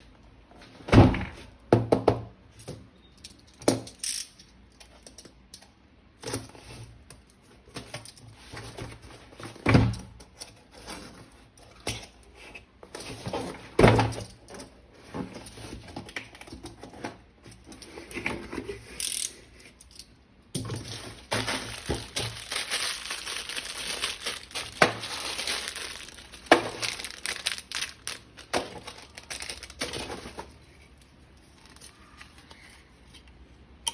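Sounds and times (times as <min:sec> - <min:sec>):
plastic parts clicking and knocking: 0:13.1 - 0:30.6
plastic packaging crinkling and tearing: 0:20.6 - 0:30.6.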